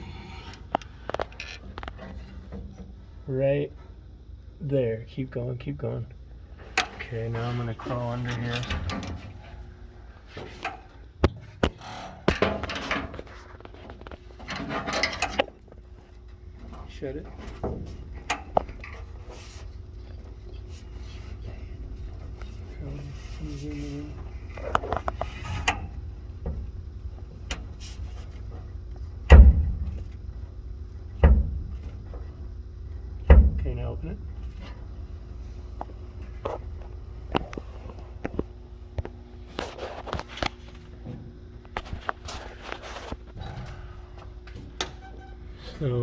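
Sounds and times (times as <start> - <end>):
shuffling and rubbing: 18.7 - 29.2, 39.4 - 41.0, 41.6 - 44.4
car hood heavy clunks: 28.5 - 30.2
knocks against metal: 29.3 - 30.1, 31.2 - 32.2, 33.2 - 33.8.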